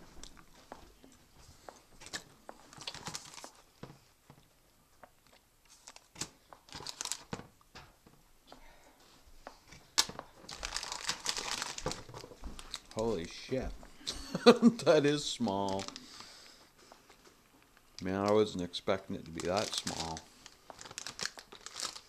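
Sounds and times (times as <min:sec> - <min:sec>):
packaging crinkling and tearing: 0:02.0 - 0:03.7, 0:05.6 - 0:07.5, 0:10.0 - 0:13.4, 0:15.0 - 0:16.3, 0:19.2 - 0:22.0.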